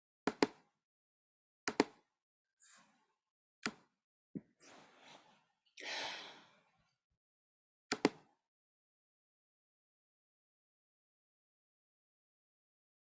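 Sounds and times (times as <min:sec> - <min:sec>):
person sighing: 0:05.8 - 0:06.6.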